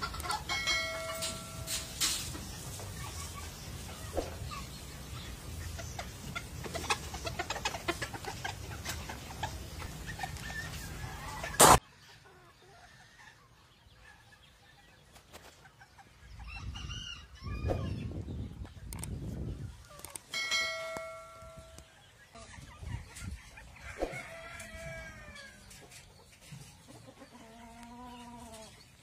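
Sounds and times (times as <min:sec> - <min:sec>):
chicks peeping: 0:00.0 - 0:20.3, 0:20.9 - 0:29.0
chickens clucking: 0:00.0 - 0:29.0.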